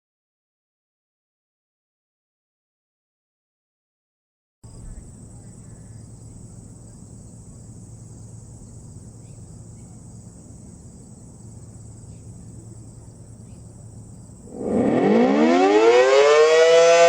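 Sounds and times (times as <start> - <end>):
insect chirring: 4.7 - 15.3
low hum: 11.6 - 17.0
outdoor warning siren winding up: 14.5 - 17.0.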